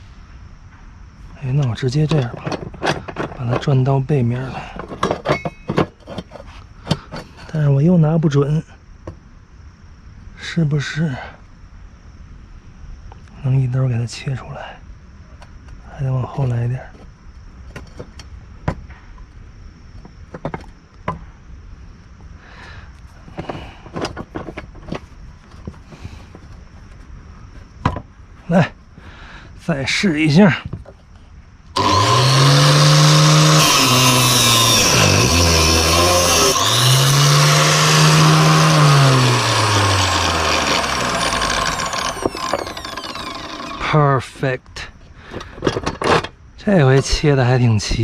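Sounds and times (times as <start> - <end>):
knocks and clicks of tool handling: 2.1 - 3.9, 4.7 - 7.3, 17.7 - 19.0, 27.8 - 28.1
motor spinning down: 31.8 - 43.9
cut-off disc grinding metal: 31.8 - 44.0.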